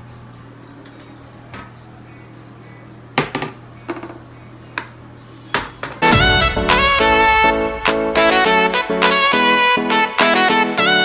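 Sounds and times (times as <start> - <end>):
background music: 6.0 - 11.0.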